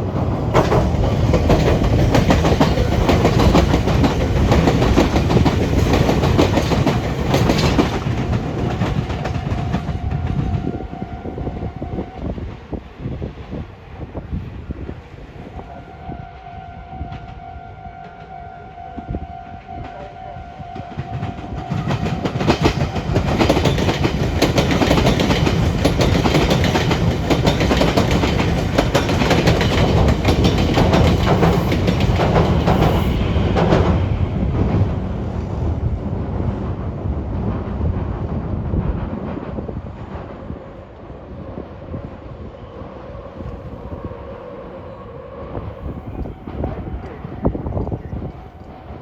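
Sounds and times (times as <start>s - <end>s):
train wheels clattering over points: 21.1s - 34.0s.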